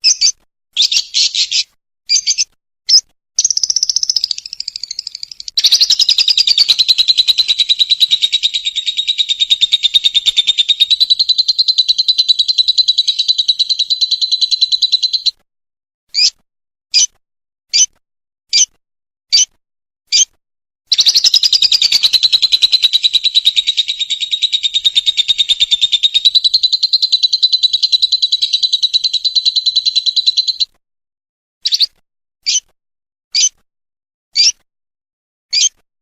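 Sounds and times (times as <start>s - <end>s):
lovebird chattering trill: 0.0s - 2.5s, 3.4s - 15.3s, 20.9s - 30.7s
lovebird sharp chirps: 0.0s - 15.4s, 20.9s - 30.7s, 31.6s - 31.9s.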